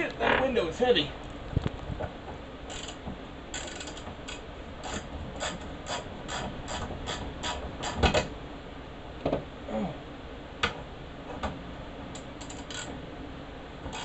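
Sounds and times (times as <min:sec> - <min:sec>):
ratchet wrench clicking: 0:03.6 - 0:05.0.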